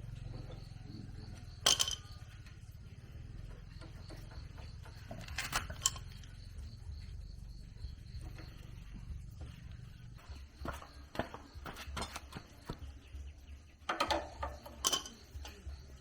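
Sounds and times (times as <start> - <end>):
low steady hum: 0.0 - 16.0
sharp metallic clinks: 0.5 - 2.9, 3.5 - 9.4, 13.9 - 16.0.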